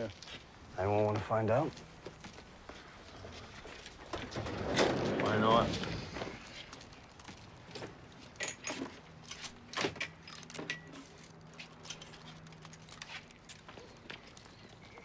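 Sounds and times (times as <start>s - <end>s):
small metallic clicks and jingles: 7.2s - 15.0s.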